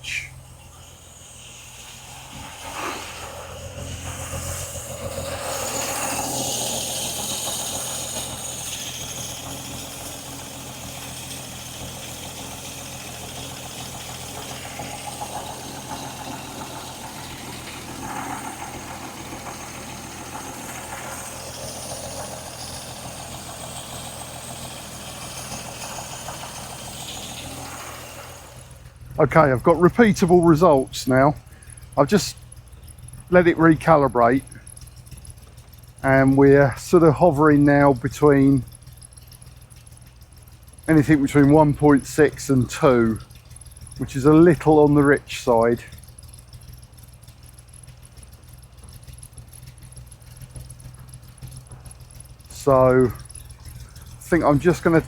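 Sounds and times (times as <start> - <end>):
car engine idling: 0.0 - 55.0.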